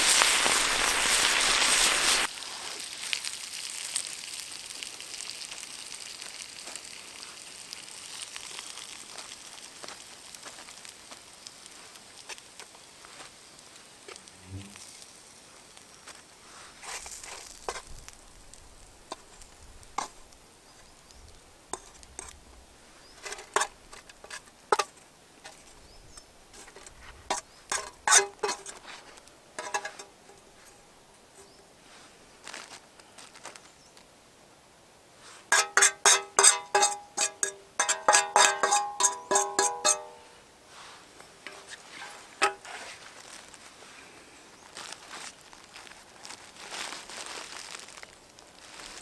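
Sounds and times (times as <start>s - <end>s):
light clicks and clinks: 29.6s - 30.8s, 35.5s - 40.4s.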